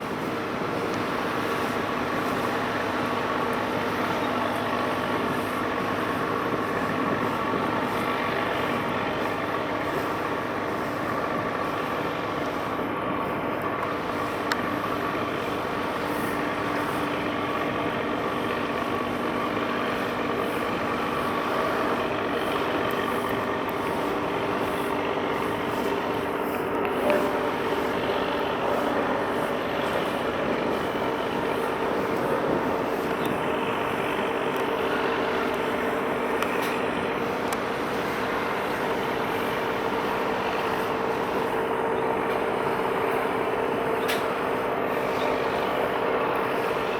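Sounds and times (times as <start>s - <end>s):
heavy road traffic drone: 0.0s - 46.9s.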